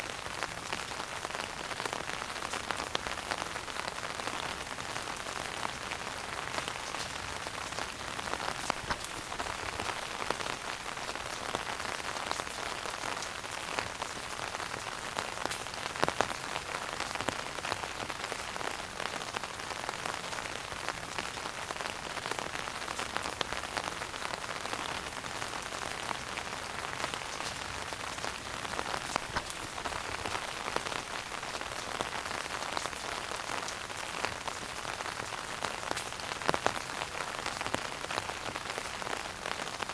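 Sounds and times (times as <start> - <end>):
wood fire crackling: 5.3 - 18.2, 25.8 - 38.7.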